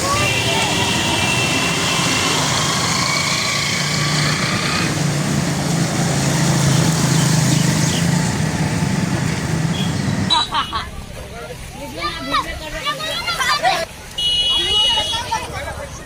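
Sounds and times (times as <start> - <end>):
vehicle engine humming: 0.0 - 10.8.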